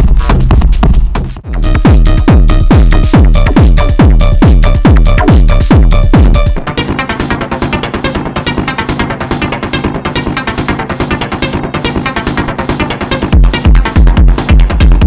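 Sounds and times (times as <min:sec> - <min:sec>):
kick drum with falling pitch: 0:00.0 - 0:06.6, 0:13.3 - 0:15.0
fast ticking pattern: 0:00.0 - 0:15.0
high synth sequence: 0:01.6 - 0:14.5.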